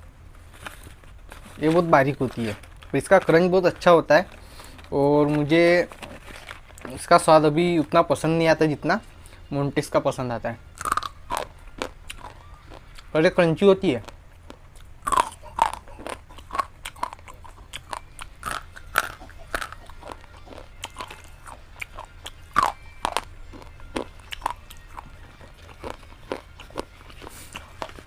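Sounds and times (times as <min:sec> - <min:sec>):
crunchy food crunching: 0:10.8 - 0:28.0
quiet chewing: 0:14.0 - 0:28.0.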